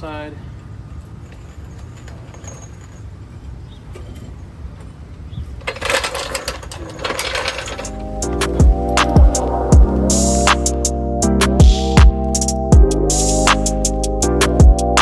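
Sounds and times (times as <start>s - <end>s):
metal parts clinking and rattling: 0.0s - 10.5s
steady low rumble: 7.7s - 12.3s.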